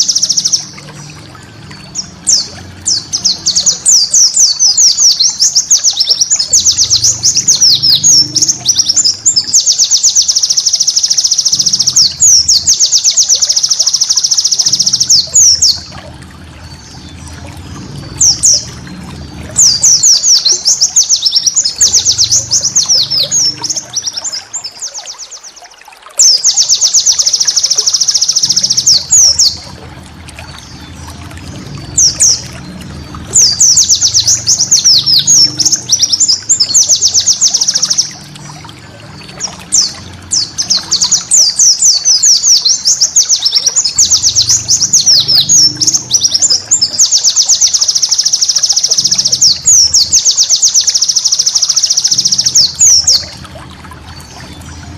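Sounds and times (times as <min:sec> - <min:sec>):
bird singing fast high trills: 0:00.0 - 0:15.9, 0:31.9 - 0:38.3.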